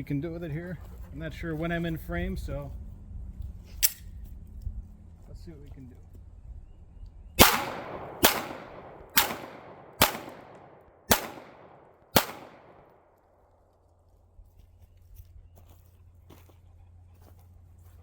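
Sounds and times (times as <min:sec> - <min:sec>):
pistol shots with echo: 0:07.4 - 0:13.1.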